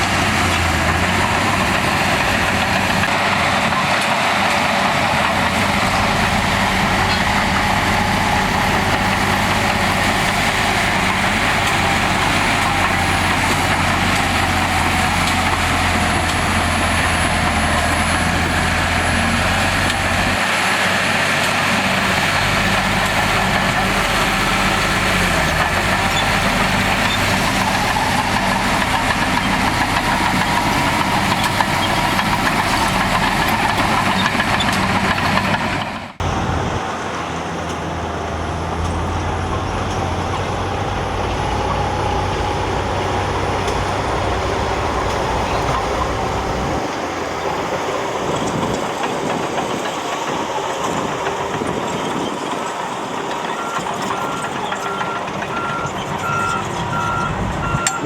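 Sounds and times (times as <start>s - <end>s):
heavy machine engines running: 0.0s - 58.0s
reversing alarm beeping: 52.5s - 58.0s.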